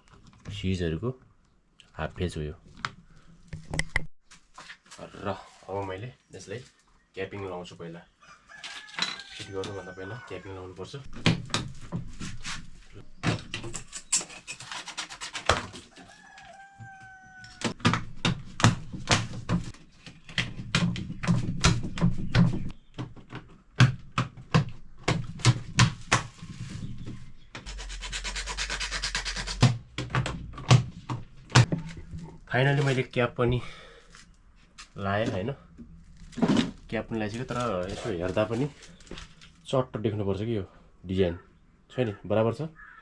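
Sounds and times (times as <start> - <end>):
plastic rubbing and sliding: 24.7 - 33.5, 34.1 - 39.6.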